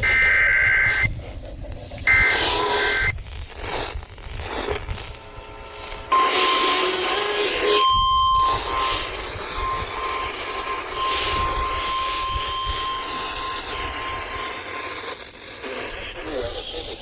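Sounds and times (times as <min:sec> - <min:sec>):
steady alarm tone: 0:00.0 - 0:01.1, 0:02.0 - 0:03.2, 0:05.2 - 0:15.0
radio static and hiss: 0:00.0 - 0:17.0.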